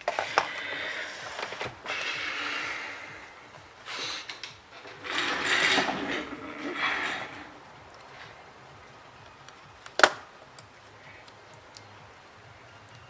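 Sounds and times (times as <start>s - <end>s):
tools scraping: 0.0s - 8.4s.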